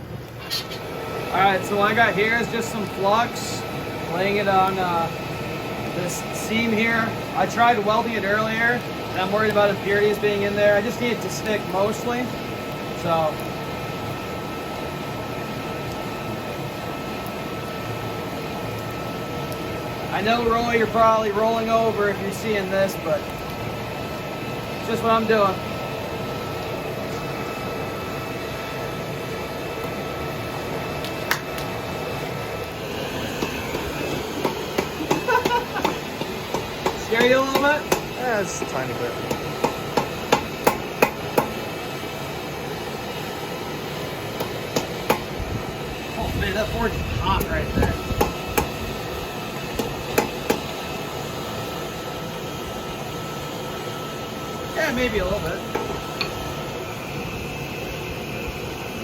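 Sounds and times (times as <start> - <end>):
forge fire rushing: 0.0 - 59.0
hammer striking hot steel: 31.0 - 31.8, 32.7 - 41.7, 44.3 - 45.4, 47.3 - 50.8, 54.8 - 56.6.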